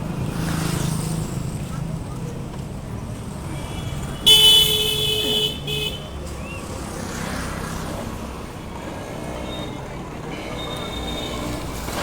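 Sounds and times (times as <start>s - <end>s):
street traffic noise: 0.0s - 12.0s
vehicle horn tooting: 3.7s - 6.1s.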